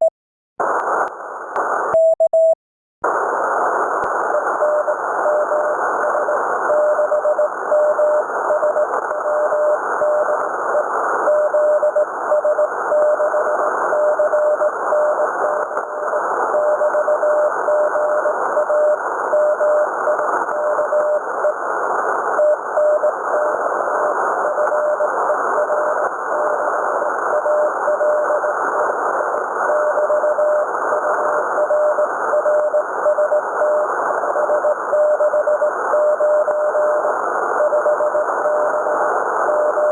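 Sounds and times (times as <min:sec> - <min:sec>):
radio band hiss: 0:00.6 - 0:01.9, 0:03.0 - 0:06.7
morse code beeps: 0:01.9 - 0:02.6, 0:04.3 - 0:21.6, 0:22.4 - 0:26.7, 0:29.6 - 0:39.9.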